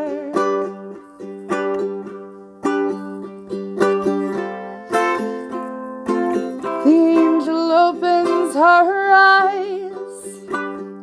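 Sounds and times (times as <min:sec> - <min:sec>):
strummed string instrument chords: 0:00.0 - 0:11.0.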